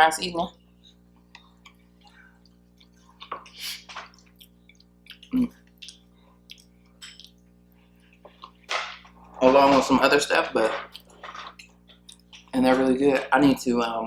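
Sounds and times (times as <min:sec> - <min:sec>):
wet chewing and mouth sounds: 0:01.2 - 0:09.2.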